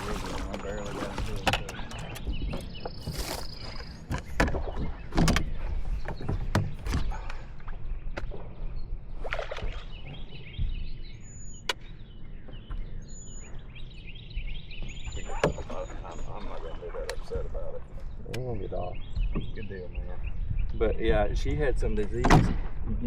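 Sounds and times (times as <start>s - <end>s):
knocks and clicks of gear: 0.0s - 7.4s
birds chirping: 0.0s - 23.0s
steady low rumble: 5.0s - 23.0s.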